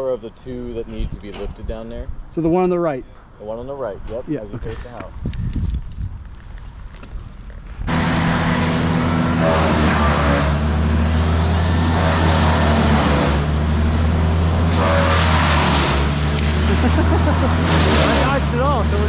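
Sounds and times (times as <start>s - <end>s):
engine running at low pitch: 7.9s - 19.0s.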